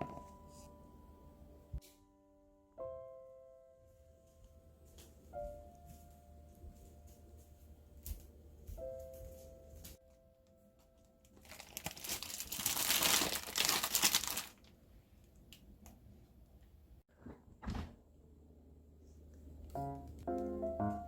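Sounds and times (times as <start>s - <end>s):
plastic bag crinkling: 11.3s - 14.8s.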